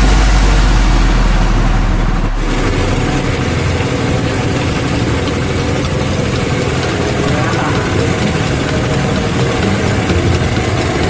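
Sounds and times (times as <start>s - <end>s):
deep bass hum: 0.0s - 4.6s
engine running with low rumble: 0.0s - 11.0s.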